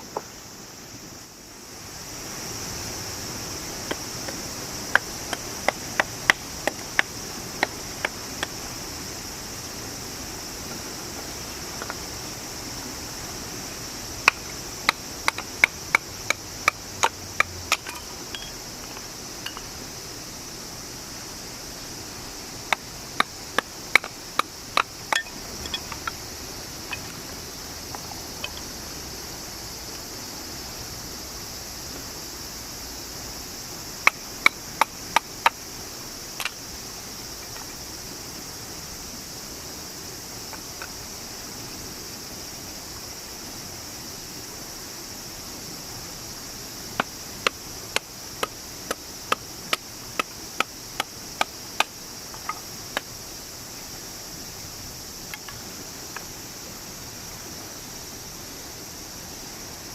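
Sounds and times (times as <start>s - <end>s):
insects chirring: 0.0s - 59.9s.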